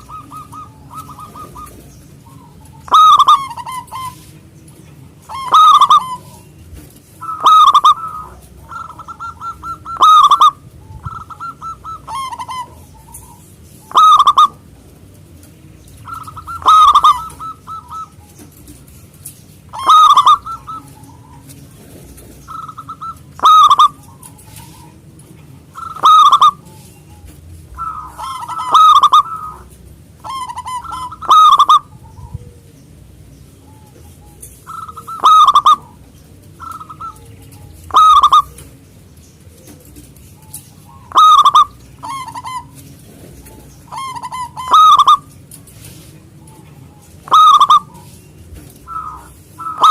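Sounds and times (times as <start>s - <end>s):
dove cooing: 0.0s - 49.9s.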